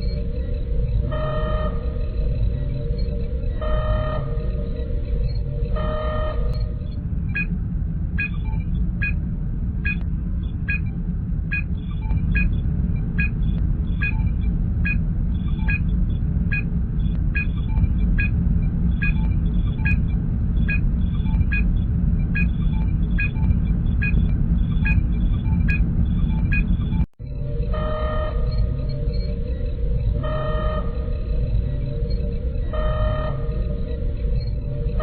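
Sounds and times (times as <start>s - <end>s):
low engine hum: 0.0s - 35.0s
computer chirp: 11.5s - 35.0s.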